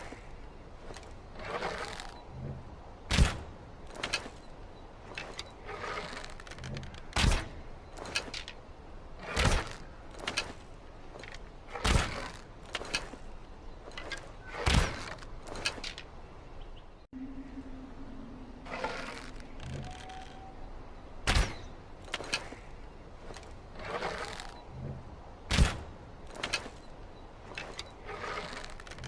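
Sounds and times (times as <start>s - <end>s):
steady low hum: 17.1s - 19.6s.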